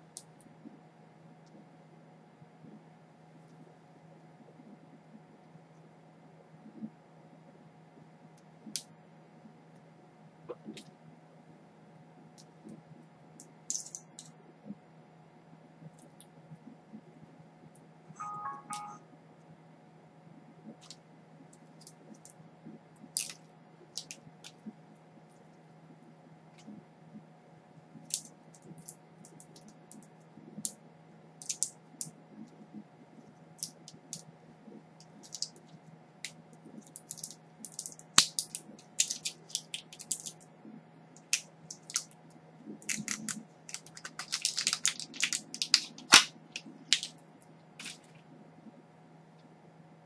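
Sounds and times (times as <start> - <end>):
packaging clicks: 36.9 - 40.4, 42.8 - 47.2
packaging crinkling: 36.9 - 40.4, 42.8 - 47.1.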